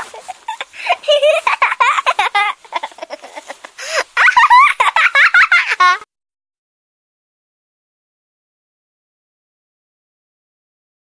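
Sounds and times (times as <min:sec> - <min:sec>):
baby laughing: 0:00.0 - 0:06.1
baby gasping: 0:03.5 - 0:04.2.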